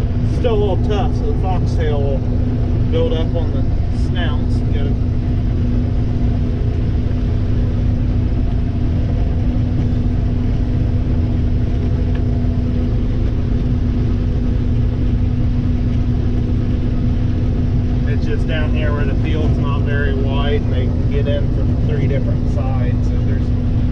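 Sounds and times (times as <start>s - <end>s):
combine harvester running: 0.0s - 23.9s
steady hum: 0.0s - 23.9s.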